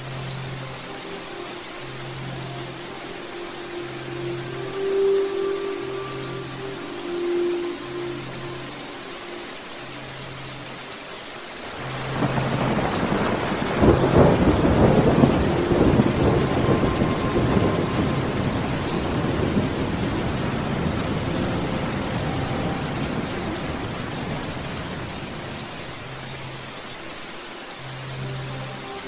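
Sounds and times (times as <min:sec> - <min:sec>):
steady rain: 0:00.0 - 0:29.0
thunder rolling: 0:12.2 - 0:24.8.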